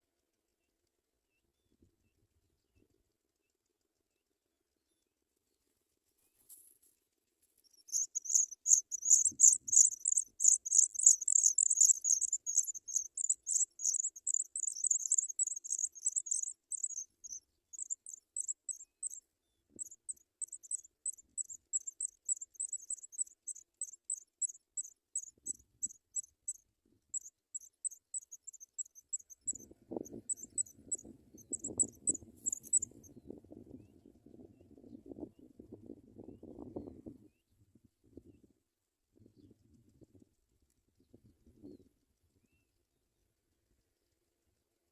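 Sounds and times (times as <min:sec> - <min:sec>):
nestlings begging cheeps: 0:07.8 - 0:19.2, 0:19.8 - 0:26.6, 0:27.2 - 0:29.6, 0:30.2 - 0:33.0.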